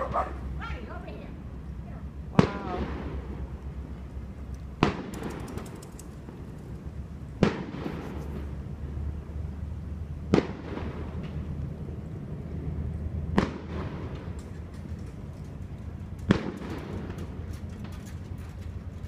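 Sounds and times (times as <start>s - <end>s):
fireworks booming: 2.1s - 9.5s, 10.2s - 14.5s, 16.2s - 17.5s
fireworks crackle: 2.4s - 9.6s, 10.2s - 19.0s.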